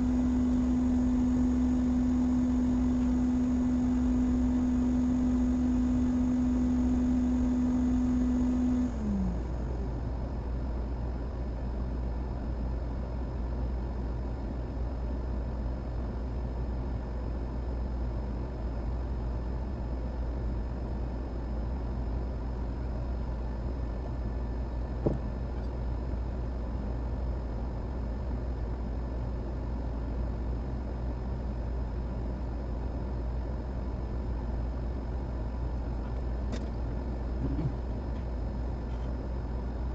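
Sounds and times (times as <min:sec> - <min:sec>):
small fan motor humming: 0:00.0 - 0:10.0, 0:35.3 - 0:39.9
low steady hum: 0:00.0 - 0:39.9.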